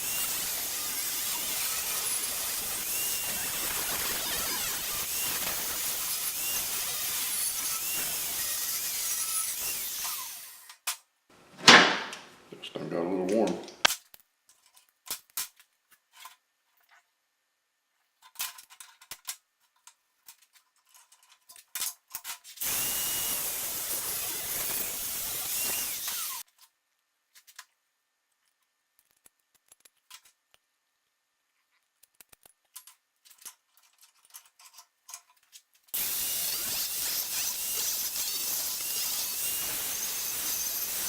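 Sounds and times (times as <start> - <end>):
angle grinder running: 0.0 - 10.6, 22.6 - 26.4, 36.0 - 41.0
clicks and knocks of handling tools: 18.2 - 22.6, 31.8 - 35.9.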